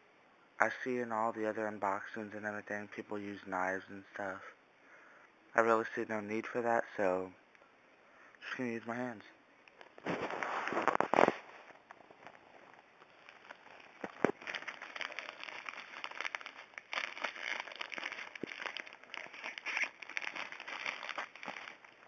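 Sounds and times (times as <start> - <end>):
package packaging tearing: 13.0 - 22.0.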